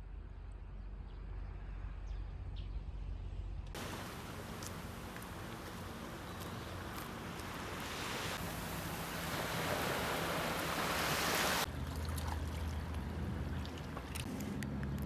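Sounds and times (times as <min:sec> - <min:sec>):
rushing water: 0:03.8 - 0:14.3.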